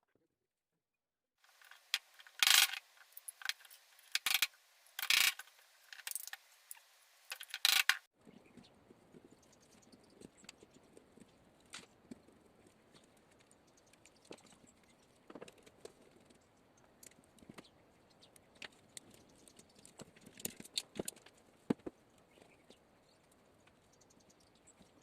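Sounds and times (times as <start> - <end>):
metallic clicks and rattles: 1.5 - 8.0.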